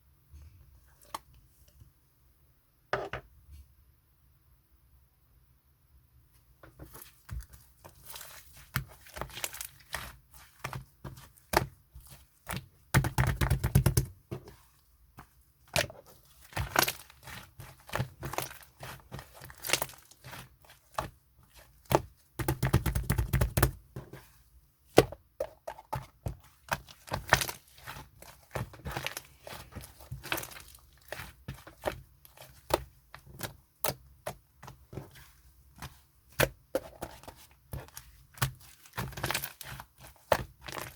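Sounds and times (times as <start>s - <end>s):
slime squished by hand: 15.6s - 24.3s, 26.0s - 40.9s.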